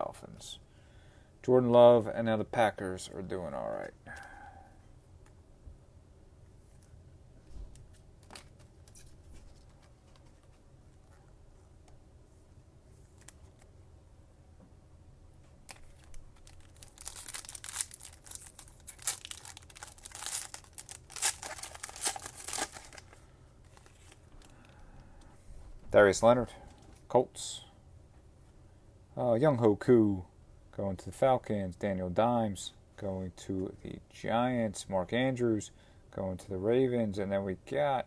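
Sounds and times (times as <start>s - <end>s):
foil wrapper tearing and crinkling: 15.7s - 24.5s.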